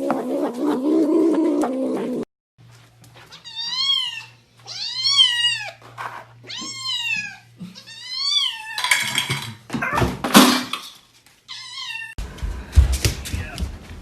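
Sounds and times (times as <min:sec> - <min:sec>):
cat meowing: 0:03.3 - 0:05.8, 0:06.4 - 0:08.9, 0:11.5 - 0:12.2.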